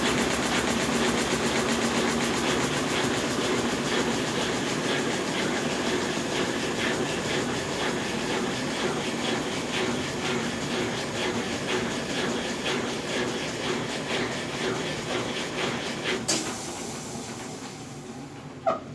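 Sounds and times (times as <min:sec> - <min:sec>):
washing machine churning water: 0:00.0 - 0:18.9.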